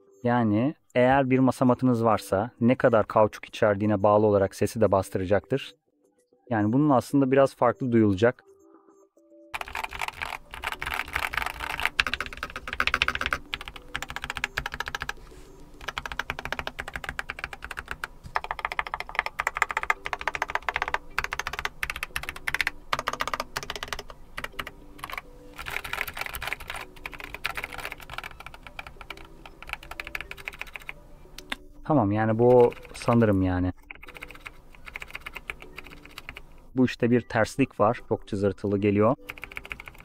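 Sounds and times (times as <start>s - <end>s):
keyboard keystrokes clacking: 9.6s - 15.2s, 15.8s - 31.6s, 32.4s - 33.2s, 33.8s - 36.4s, 39.3s - 40.0s.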